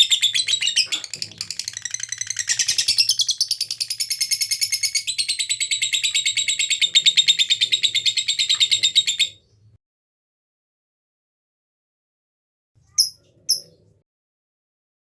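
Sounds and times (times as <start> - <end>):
lovebird chattering trill: 12.9 - 13.8.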